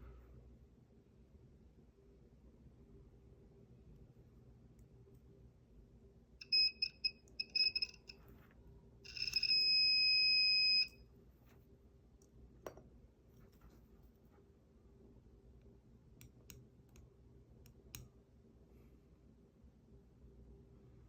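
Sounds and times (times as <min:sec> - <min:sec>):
multimeter continuity beeps: 0:06.4 - 0:08.2, 0:09.1 - 0:11.0.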